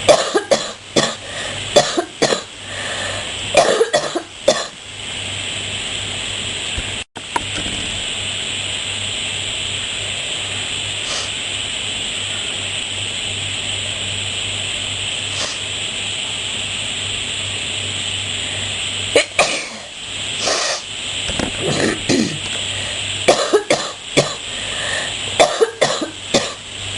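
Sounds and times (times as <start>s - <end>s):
person coughing: 0.0s - 1.2s, 1.8s - 2.5s, 3.6s - 4.7s, 19.2s - 19.9s, 21.6s - 22.5s, 23.3s - 24.4s, 25.4s - 26.6s
steady hiss and low hum: 0.0s - 26.9s.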